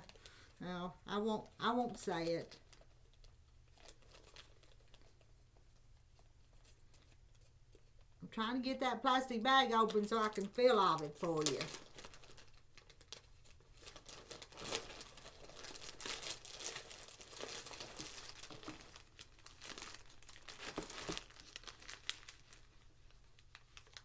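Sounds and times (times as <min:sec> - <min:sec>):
plastic bag crinkling: 0:00.0 - 0:05.6, 0:08.6 - 0:24.0.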